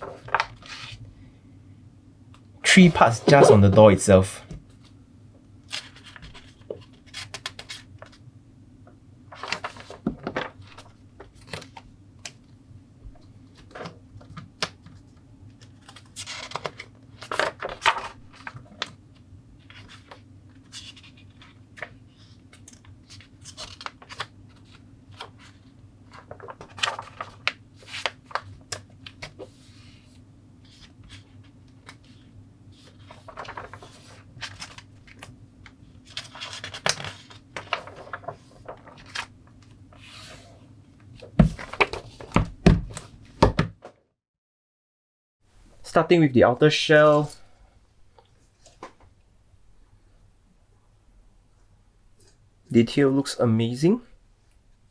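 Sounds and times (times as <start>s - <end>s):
low steady hum: 0.0s - 43.4s.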